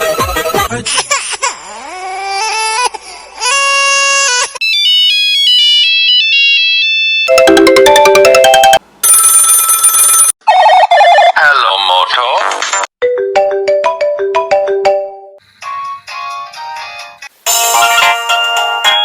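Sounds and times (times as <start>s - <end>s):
mobile phone ringtones: 7.3s - 11.3s.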